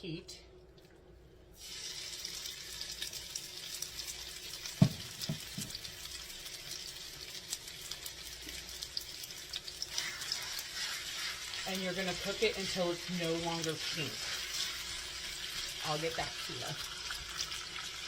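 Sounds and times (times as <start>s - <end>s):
chicken sizzling in a pan: 1.6s - 18.0s.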